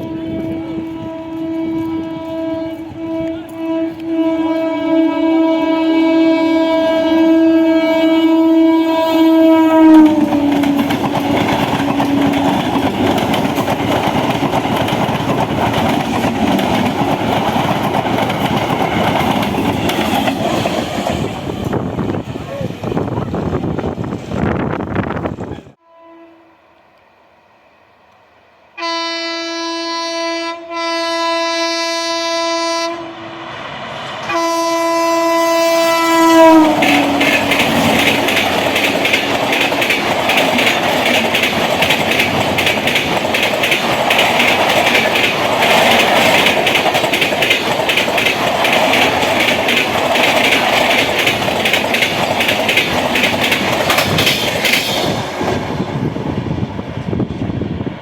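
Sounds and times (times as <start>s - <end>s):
train horn blasts: 0.0s - 12.8s, 25.8s - 26.8s, 28.7s - 33.6s, 34.2s - 37.9s
train wheels clattering over rail joints: 10.1s - 21.9s, 36.6s - 55.8s.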